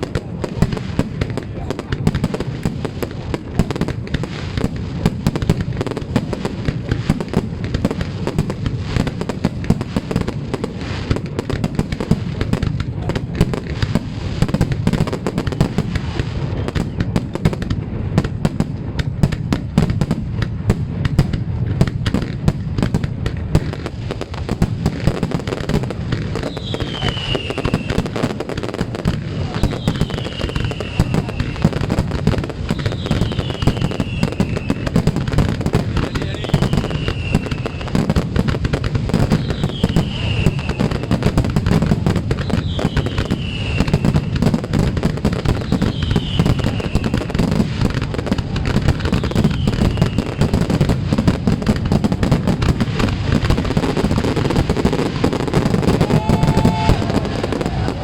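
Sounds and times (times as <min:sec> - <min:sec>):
fireworks bangs and crackles: 0:00.0 - 0:58.0
falling whistle: 0:56.0 - 0:58.0.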